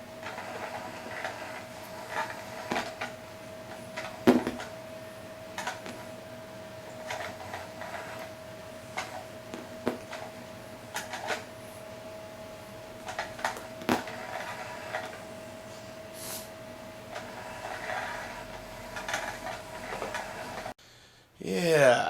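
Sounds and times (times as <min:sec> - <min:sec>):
small electric motor humming: 0:17.1 - 0:20.8.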